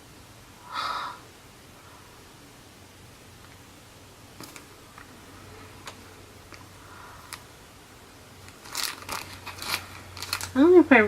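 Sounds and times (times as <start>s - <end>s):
packaging crinkling: 4.4s - 5.1s, 8.4s - 10.9s.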